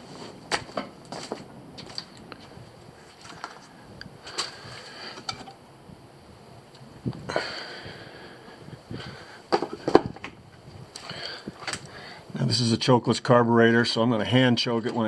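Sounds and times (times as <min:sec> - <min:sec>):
parts knocking and clattering: 0:09.5 - 0:10.4.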